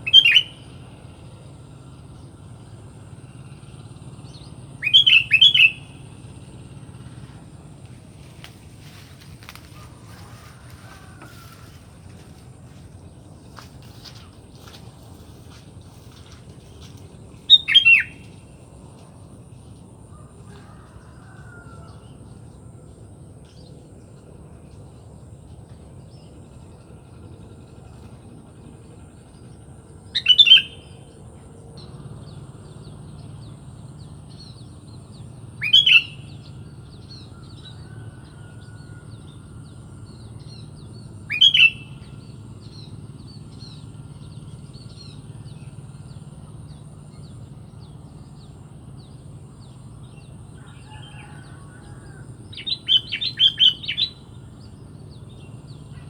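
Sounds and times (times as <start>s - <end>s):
bulbul calling: 0.0s - 0.9s, 4.3s - 6.5s, 8.2s - 18.5s, 30.1s - 31.0s, 35.5s - 38.1s, 40.3s - 45.8s, 50.7s - 56.0s
faint bird chirping: 0.0s - 19.2s.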